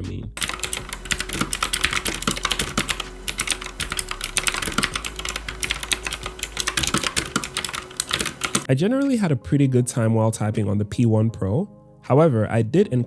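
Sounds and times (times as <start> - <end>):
mechanical keyboard typing: 0.4 - 8.7.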